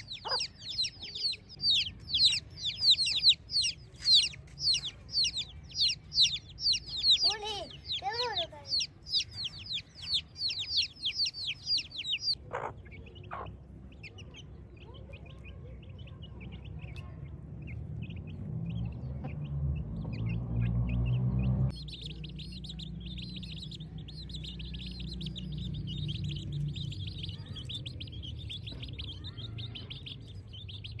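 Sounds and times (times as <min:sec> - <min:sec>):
chicks peeping: 0:00.0 - 0:31.0
low rumble: 0:15.8 - 0:29.4.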